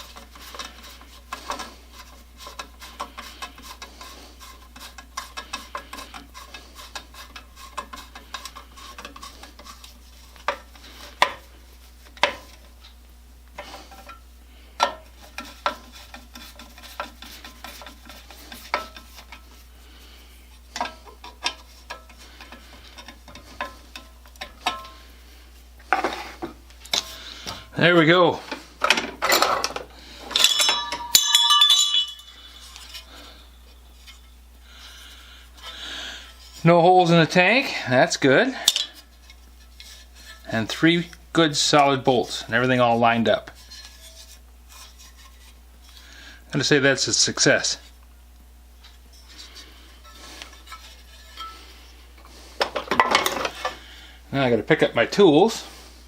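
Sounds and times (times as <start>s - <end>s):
metallic clinks and knocks: 28.9s - 33.1s.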